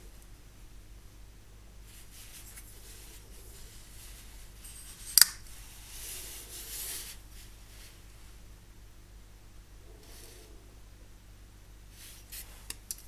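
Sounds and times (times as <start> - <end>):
faint rubbing: 1.9 - 8.4, 9.8 - 10.8
folding knife lock click: 5.2 - 5.4.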